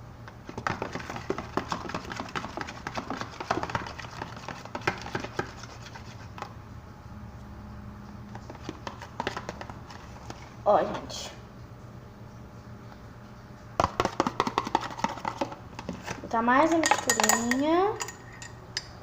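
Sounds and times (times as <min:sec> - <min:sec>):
stirrer clicking and scraping container: 0:00.4 - 0:06.5, 0:08.3 - 0:10.5, 0:13.8 - 0:17.5.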